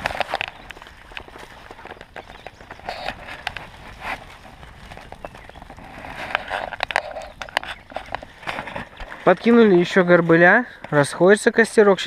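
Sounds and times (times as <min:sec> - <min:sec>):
twigs snapping in campfire: 0:00.0 - 0:09.5.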